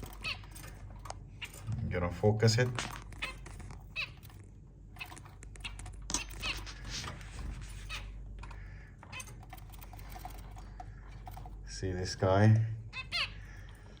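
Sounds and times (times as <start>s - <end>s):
handling clicks and rustling: 0.0s - 12.6s.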